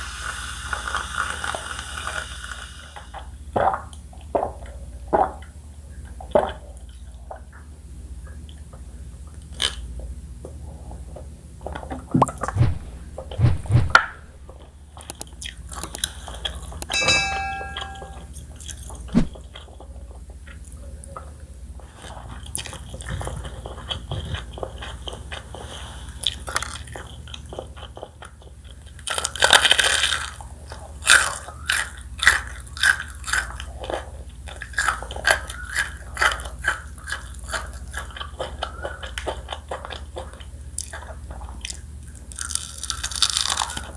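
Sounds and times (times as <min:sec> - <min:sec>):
brief ringing tone: 0:16.9 - 0:18.3
crunchy chewing and biting: 0:21.9 - 0:43.9.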